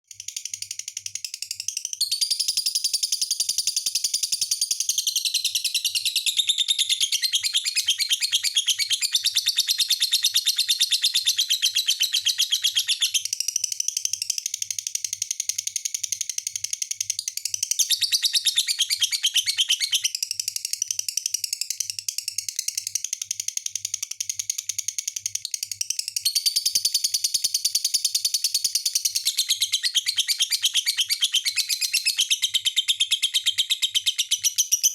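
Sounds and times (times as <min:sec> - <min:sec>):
bird chattering trill: 0:05.4 - 0:13.3, 0:28.6 - 0:34.9.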